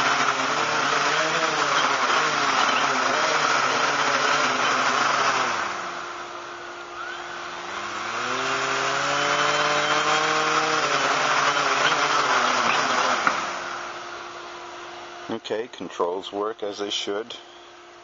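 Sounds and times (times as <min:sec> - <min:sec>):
quadcopter propellers whirring: 0:00.0 - 0:14.8.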